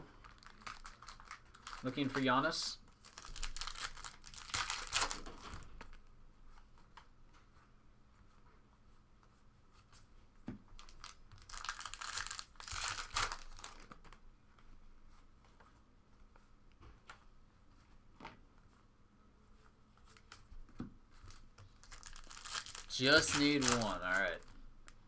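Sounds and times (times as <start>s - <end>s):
card pack wrappers tearing: 0.2s - 2.0s, 3.0s - 5.3s, 10.8s - 14.0s, 21.3s - 24.6s
wrapper crinkling: 0.2s - 2.2s, 2.9s - 6.0s, 10.8s - 14.2s, 21.2s - 25.0s.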